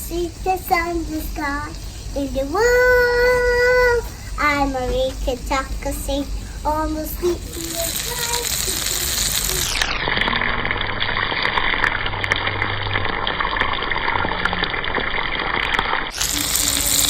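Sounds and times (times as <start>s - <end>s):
muffled rushing noise: 0.0s - 11.3s.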